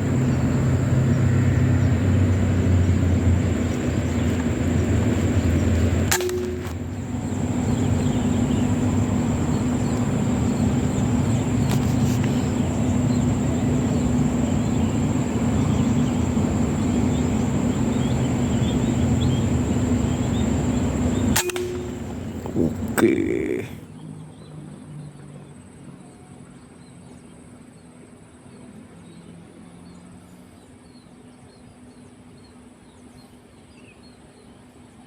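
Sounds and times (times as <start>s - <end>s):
steady low hum: 0.0s - 34.7s
air rifle shots: 6.0s - 6.9s, 21.3s - 22.3s
ringing metal clang: 6.1s - 7.0s, 21.3s - 22.3s.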